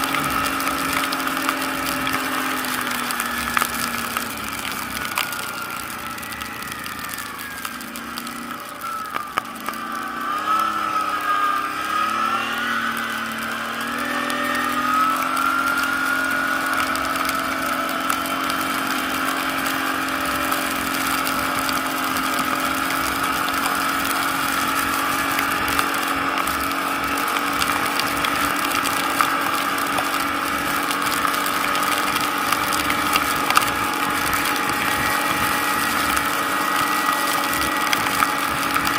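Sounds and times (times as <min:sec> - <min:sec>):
atv engine running: 0:00.0 - 0:38.9.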